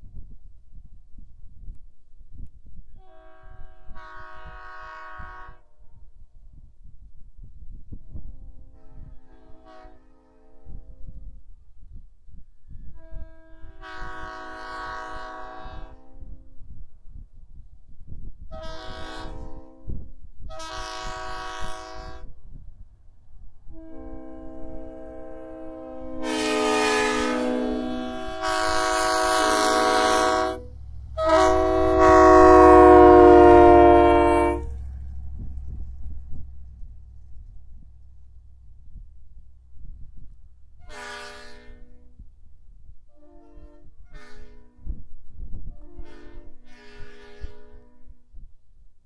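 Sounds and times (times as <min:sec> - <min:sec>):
locomotive air horn blasts: 0:03.0 - 0:06.0, 0:08.3 - 0:11.3, 0:12.9 - 0:16.6, 0:18.5 - 0:22.4, 0:23.7 - 0:37.0, 0:40.5 - 0:42.3, 0:43.1 - 0:45.0, 0:45.6 - 0:48.4.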